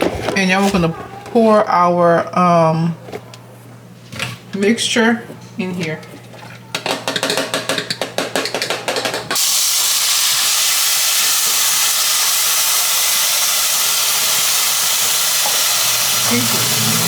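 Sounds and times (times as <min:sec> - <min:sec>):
vegetables sizzling in oil: 0:09.4 - 0:17.0.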